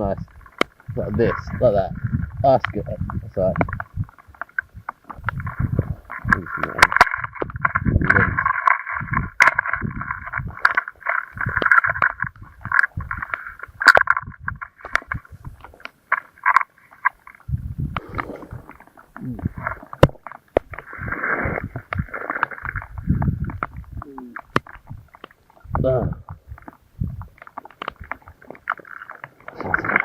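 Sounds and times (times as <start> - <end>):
low rumbles: 17.4 - 25.1.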